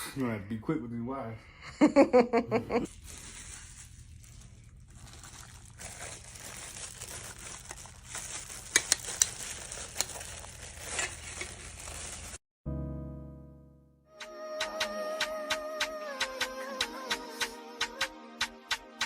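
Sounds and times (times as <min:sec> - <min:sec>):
low steady hum: 0:02.8 - 0:12.1
rustling crinkling handling noise: 0:02.8 - 0:12.4.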